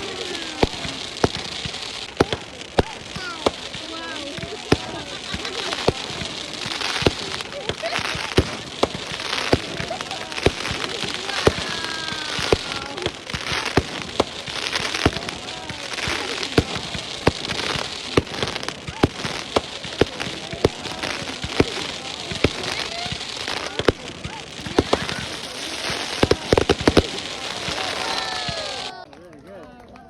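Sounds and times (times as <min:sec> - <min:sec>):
fireworks bangs: 0:00.0 - 0:29.1
fireworks crackling: 0:00.0 - 0:29.1.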